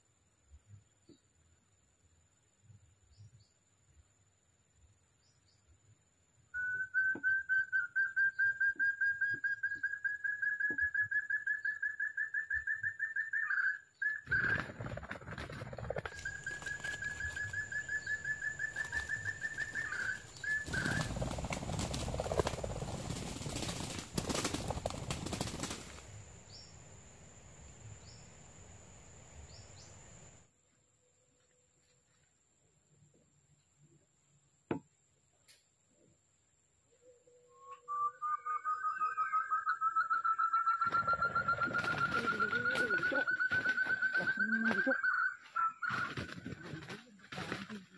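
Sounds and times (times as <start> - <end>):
quail trilled call: 16.0 - 21.3, 37.1 - 47.6.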